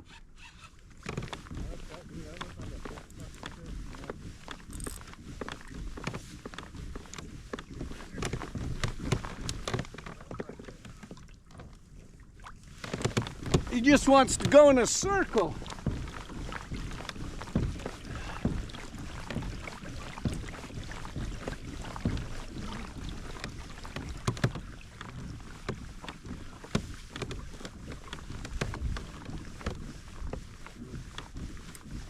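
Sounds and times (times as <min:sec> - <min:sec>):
water lapping against boat hull: 0:00.0 - 0:32.0
light clicks and knocks: 0:01.0 - 0:11.8, 0:12.8 - 0:14.8.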